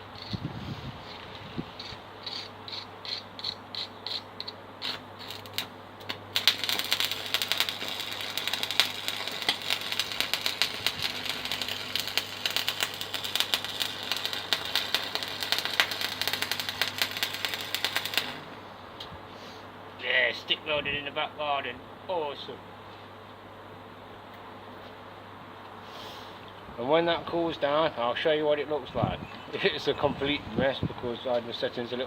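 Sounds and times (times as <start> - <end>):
welding arc crackling: 4.8 - 18.7.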